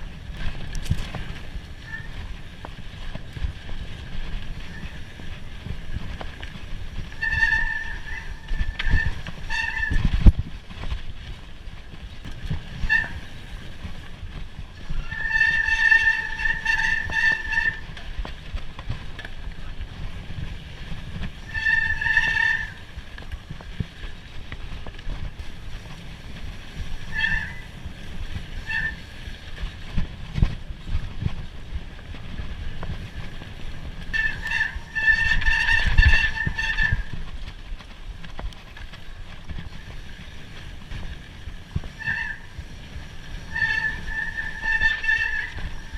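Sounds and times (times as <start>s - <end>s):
low rumble of riding: 0.0s - 45.9s
bike brakes squealing: 1.0s - 2.5s, 6.9s - 10.2s, 12.7s - 13.7s, 14.8s - 18.0s, 21.4s - 23.0s, 26.9s - 29.4s, 34.0s - 37.2s, 41.8s - 45.9s.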